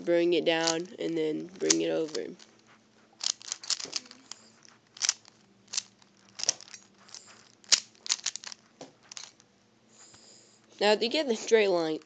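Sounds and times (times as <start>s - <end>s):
plastic cube clicks: 3.2s - 4.4s, 5.0s - 9.4s.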